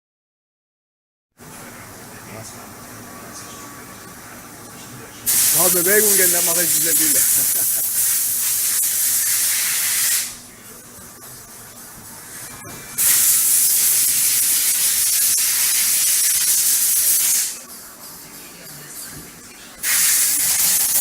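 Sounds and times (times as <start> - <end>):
machine coolant spray hissing: 5.2 - 10.4, 13.0 - 17.6, 19.8 - 21.0.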